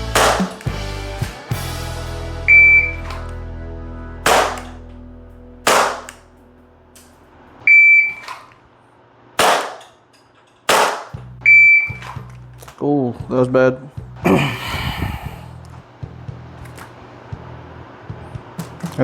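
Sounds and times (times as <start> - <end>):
airsoft pistol shots: 0.2 - 0.6, 4.2 - 4.8, 5.7 - 6.2, 9.4 - 9.9, 10.7 - 11.2
short high electronic beep: 2.5 - 3.1, 11.5 - 12.0.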